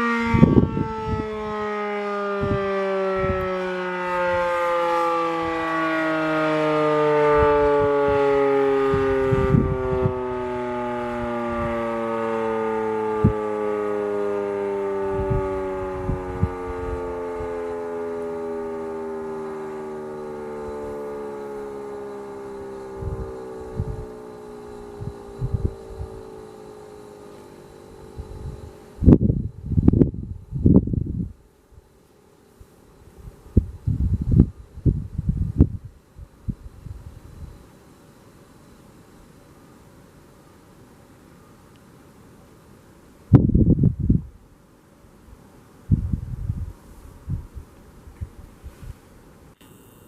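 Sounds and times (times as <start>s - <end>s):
warning siren winding down: 0.0s - 31.5s, 32.6s - 39.4s, 43.3s - 44.2s, 49.5s - 50.0s.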